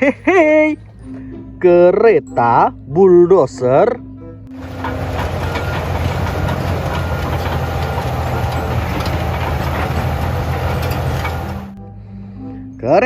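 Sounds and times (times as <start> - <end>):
heavy engine idling: 4.5 - 11.8.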